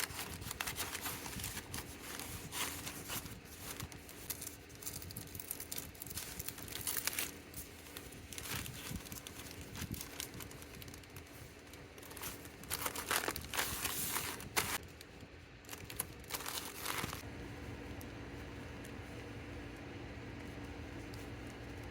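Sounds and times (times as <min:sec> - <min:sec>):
packaging crinkling: 0:00.0 - 0:17.3.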